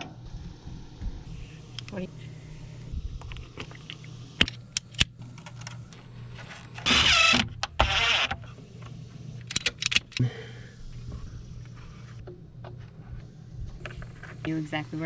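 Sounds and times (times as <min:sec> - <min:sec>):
electric drill whirring: 0:06.8 - 0:08.5
clicks and knocks of tools: 0:09.4 - 0:10.2.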